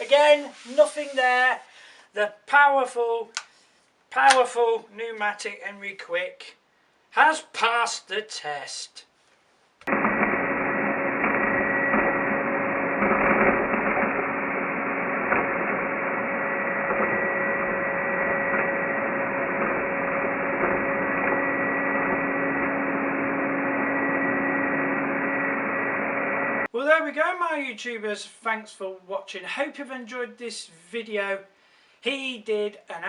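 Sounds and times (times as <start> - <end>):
vacuum cleaner running: 9.9 - 26.7.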